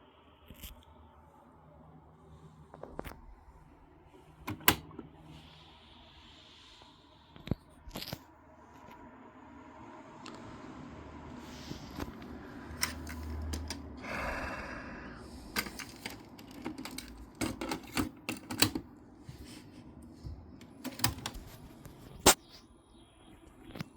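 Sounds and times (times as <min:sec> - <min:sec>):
cassette deck mechanism clicks: 0:04.5 - 0:05.1, 0:12.8 - 0:13.9, 0:15.6 - 0:18.9, 0:20.6 - 0:21.4.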